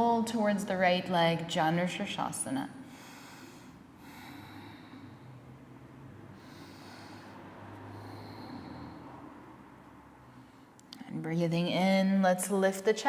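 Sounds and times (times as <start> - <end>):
woman breathing through nose: 2.9 - 5.5, 6.3 - 9.3.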